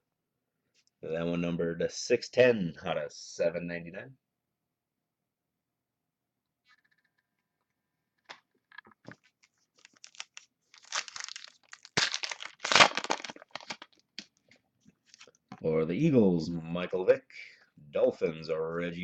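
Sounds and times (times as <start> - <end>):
wrapper tearing and crinkling: 9.4 - 14.3.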